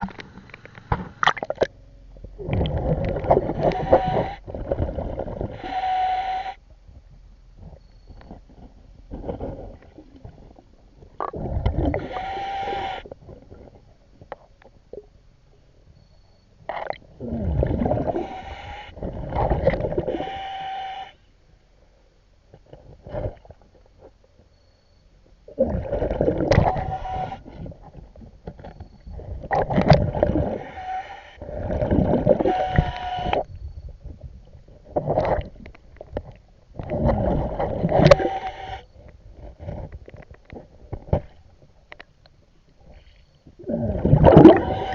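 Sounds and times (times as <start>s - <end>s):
gurgling exhaust bubbles: 1.2s - 5.5s, 16.8s - 18.3s, 43.6s - 44.9s
diver breathing through regulator: 2.4s - 6.6s, 11.3s - 13.7s, 17.2s - 21.2s, 30.0s - 33.5s.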